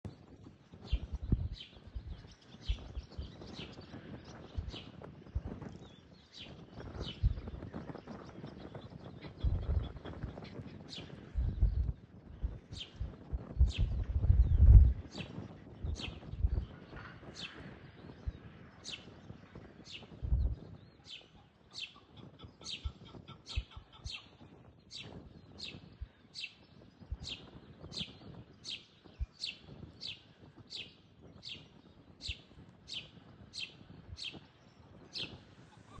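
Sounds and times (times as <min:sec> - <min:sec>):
partridge calling: 0:21.0 - 0:25.8.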